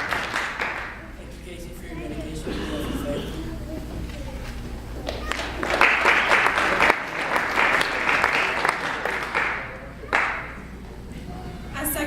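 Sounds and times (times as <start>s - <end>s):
audience applauding: 0.0s - 1.2s, 5.0s - 10.7s.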